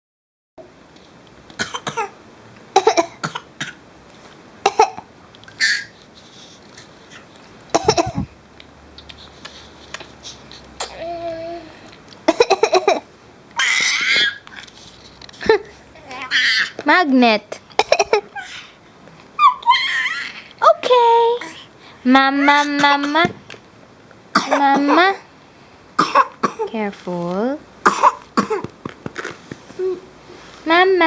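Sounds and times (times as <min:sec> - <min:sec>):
child coughing: 0:01.6 - 0:02.2, 0:02.8 - 0:03.8, 0:04.6 - 0:05.0, 0:07.7 - 0:08.3, 0:10.8 - 0:11.1, 0:17.8 - 0:18.3, 0:24.3 - 0:25.2, 0:26.0 - 0:26.7, 0:27.8 - 0:28.7
woman coughing: 0:07.8 - 0:08.3, 0:24.4 - 0:25.2, 0:26.0 - 0:26.7, 0:27.8 - 0:28.6
child vocal sound: 0:10.8 - 0:12.0, 0:29.8 - 0:30.1.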